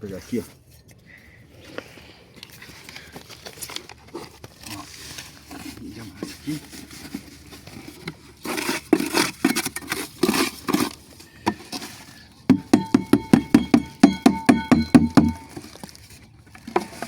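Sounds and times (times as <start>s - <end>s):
ringing metal taps: 12.5s - 15.6s.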